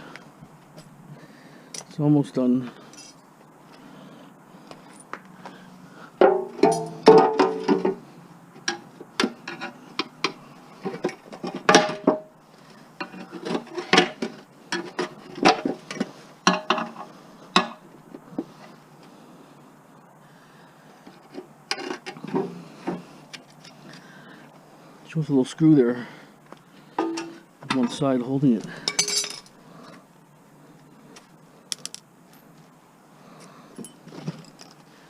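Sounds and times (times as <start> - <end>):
tools and metal parts clinking: 6.4 - 8.0, 27.0 - 28.0, 28.7 - 29.6, 33.8 - 34.9.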